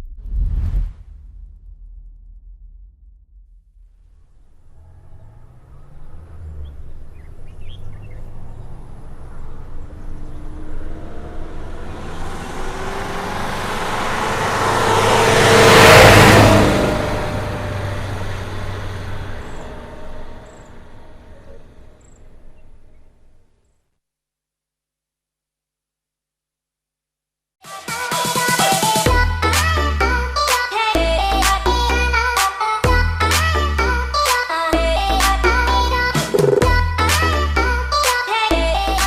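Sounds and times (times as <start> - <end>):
road noise: 3.8 - 23.8
bus engine hum: 4.2 - 23.7.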